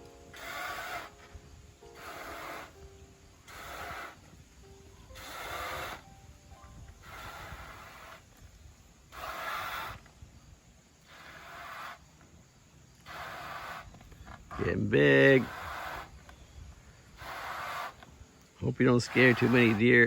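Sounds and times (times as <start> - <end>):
person blowing into balloon: 0.0 - 4.4, 5.1 - 6.2, 7.0 - 8.3, 9.1 - 10.1, 11.0 - 12.1, 13.0 - 14.6, 15.3 - 16.3, 17.2 - 18.0.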